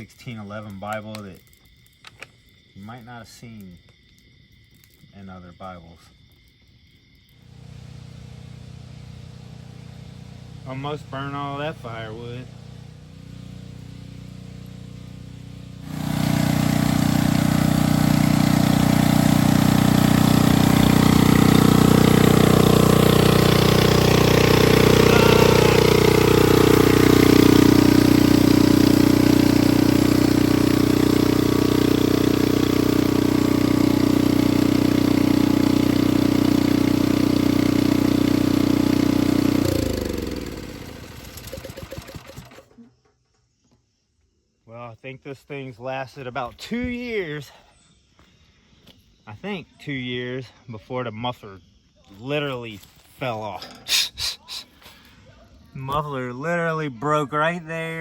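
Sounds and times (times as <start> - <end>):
loud chainsaw engine idling: 7.5 - 42.8.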